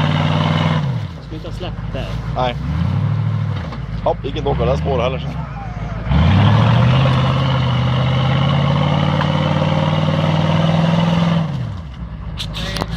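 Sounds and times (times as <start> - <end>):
engine revving at high revs: 0.0 - 1.1, 2.4 - 3.6, 6.0 - 11.8.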